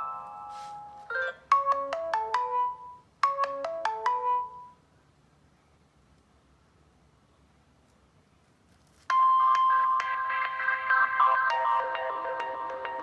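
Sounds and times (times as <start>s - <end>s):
bright phone ringtone melody: 0.0s - 4.8s, 9.1s - 13.0s.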